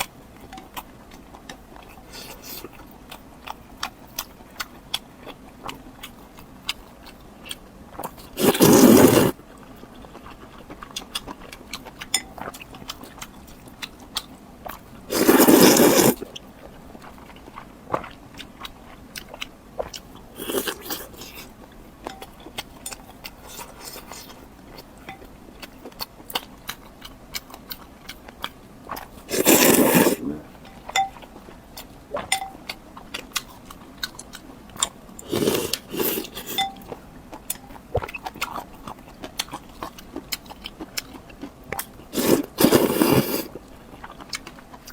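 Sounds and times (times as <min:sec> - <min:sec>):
chewing with wet mouth clicks: 0:00.0 - 0:44.9
loud bite: 0:08.4 - 0:09.4, 0:15.1 - 0:16.2, 0:29.3 - 0:30.4, 0:35.2 - 0:36.6, 0:42.2 - 0:43.5.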